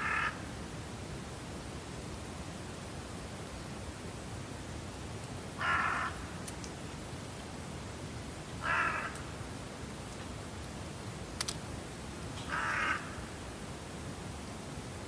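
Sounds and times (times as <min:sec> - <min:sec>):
crow cawing: 0:00.0 - 0:00.5, 0:05.6 - 0:06.4, 0:08.6 - 0:09.4, 0:12.4 - 0:13.4
faint steady hiss: 0:00.0 - 0:15.0.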